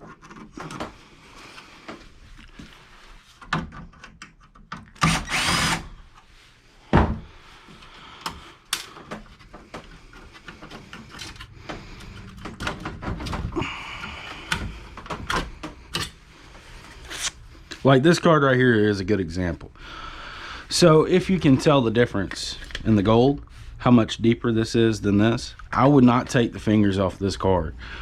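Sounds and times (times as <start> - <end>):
computer parts clicking and knocking: 3.4 - 5.8, 8.2 - 16.2
cordless drill whirring: 5.0 - 6.1.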